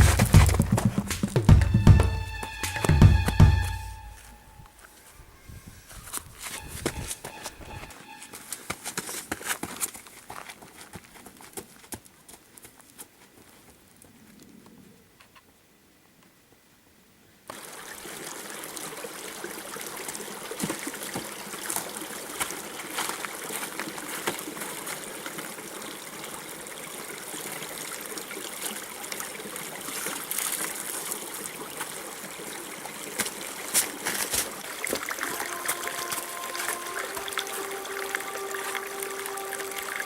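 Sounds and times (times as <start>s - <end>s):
sustained musical notes: 0.0s - 8.7s, 35.0s - 40.0s
water trickling: 17.5s - 40.0s.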